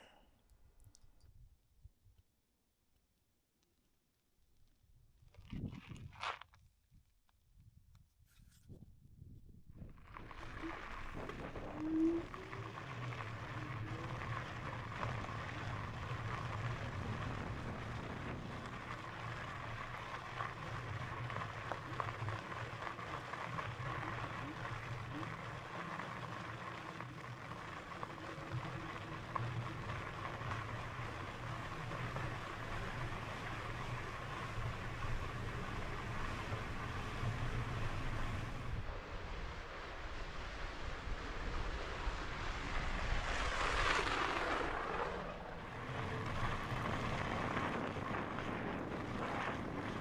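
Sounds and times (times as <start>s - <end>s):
tyre noise on trail: 4.4s - 8.8s, 9.6s - 50.0s
wind on microphone: 5.4s - 6.2s, 7.6s - 26.3s, 28.4s - 50.0s
faint motor whine: 10.1s - 50.0s.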